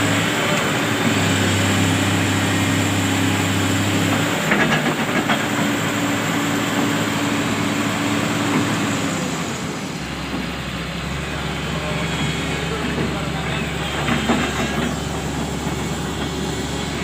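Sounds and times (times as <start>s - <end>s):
diesel machinery rumbling: 0.0s - 17.0s.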